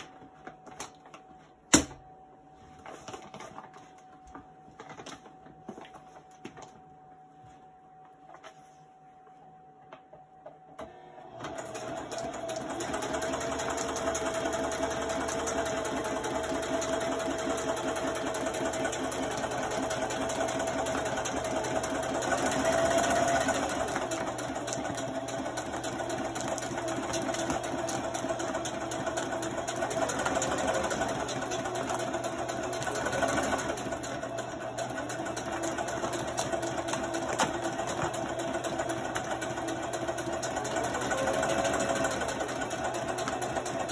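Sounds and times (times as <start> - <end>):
sewing machine stitching: 10.8 - 43.9.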